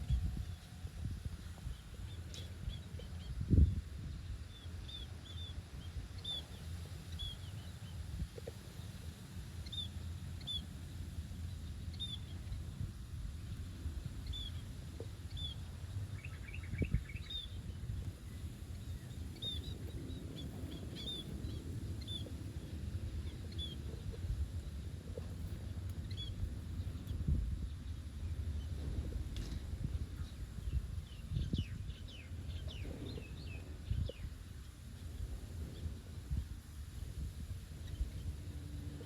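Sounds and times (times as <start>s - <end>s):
steady low rumble: 0.0s - 39.0s
small bird chirping: 14.2s - 24.3s.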